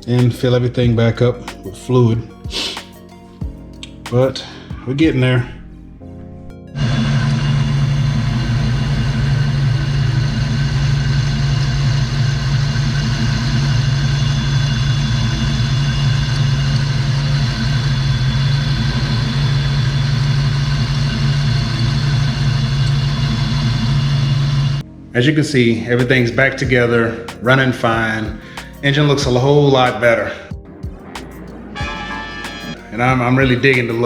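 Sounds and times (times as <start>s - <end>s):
car engine idling: 3.2s - 25.2s.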